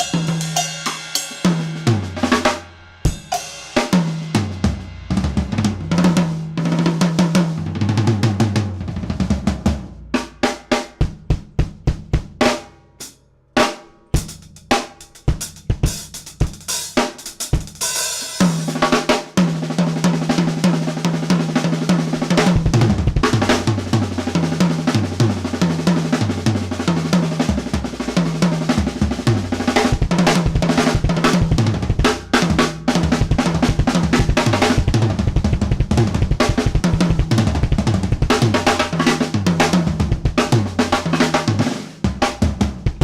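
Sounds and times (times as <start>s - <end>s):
cymbals: 0.0s - 5.8s
snare drum: 0.0s - 12.8s, 13.6s - 43.0s
bass drum: 1.5s - 3.4s, 4.0s - 12.7s, 14.2s - 43.0s.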